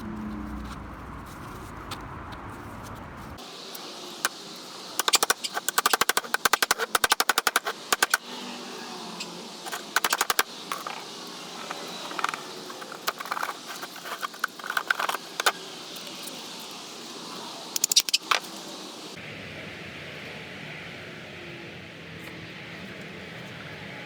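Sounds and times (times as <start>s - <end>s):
steady hiss: 3.4s - 19.8s
rapid mechanical clicking: 5.0s - 8.3s, 9.6s - 16.4s.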